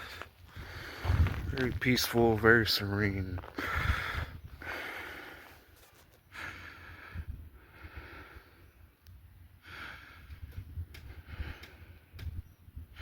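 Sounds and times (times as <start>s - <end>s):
person breathing: 0.0s - 1.4s, 3.5s - 8.8s, 9.6s - 12.1s.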